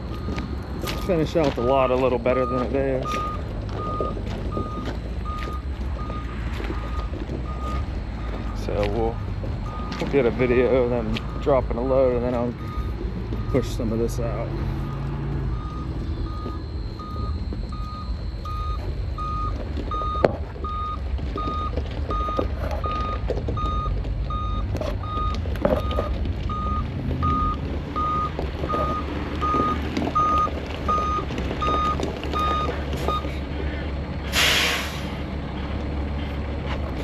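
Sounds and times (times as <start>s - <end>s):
truck back-up alarm beeping: 0.0s - 37.0s
truck engine running: 0.0s - 37.0s.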